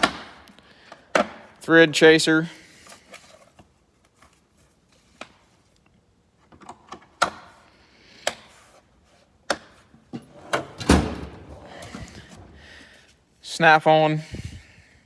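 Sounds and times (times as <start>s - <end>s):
tools and metal drawers clanking: 10.1s - 12.7s.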